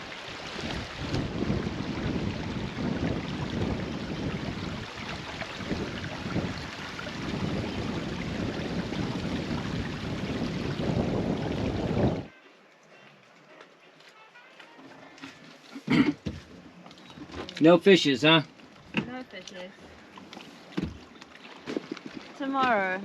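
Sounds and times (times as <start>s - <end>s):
water washing: 0.0s - 12.3s, 16.9s - 23.0s
wind buffeting microphone: 0.0s - 12.3s.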